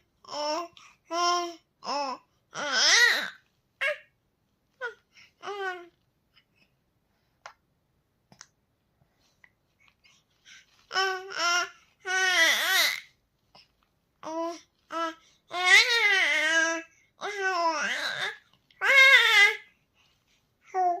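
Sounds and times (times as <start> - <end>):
baby cooing: 0.2 - 4.1, 4.8 - 6.0, 10.9 - 13.1, 14.2 - 19.7.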